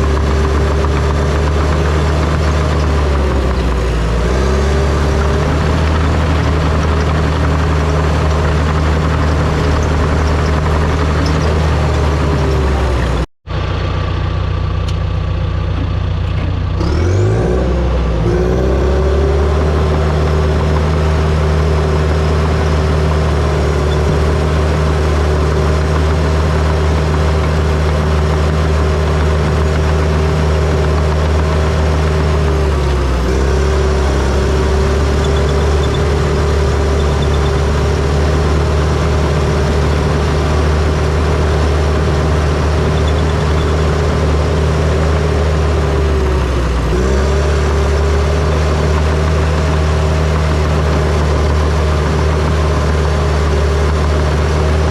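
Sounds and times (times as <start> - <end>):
bulldozer diesel engine running: 0.0 - 54.9.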